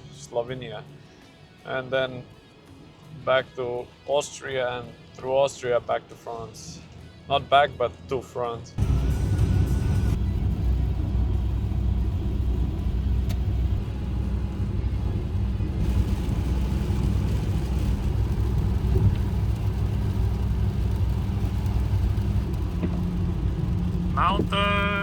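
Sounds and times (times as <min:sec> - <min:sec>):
car engine and road noise: 0:08.7 - 0:25.0.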